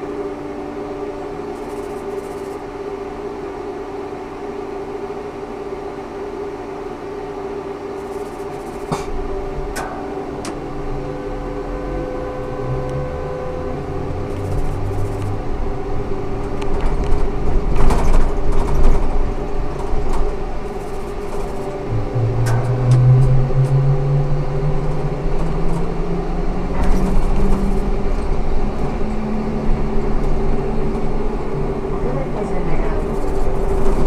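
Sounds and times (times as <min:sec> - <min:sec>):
trolleybus electrical hum: 0:00.0 - 0:34.0
low rumble with rattling: 0:08.0 - 0:34.0.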